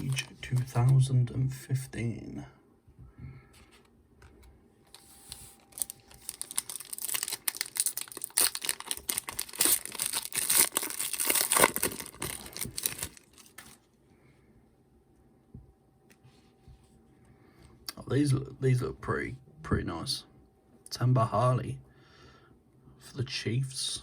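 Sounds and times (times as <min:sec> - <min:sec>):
wrapper tearing and crinkling: 0:05.6 - 0:13.8.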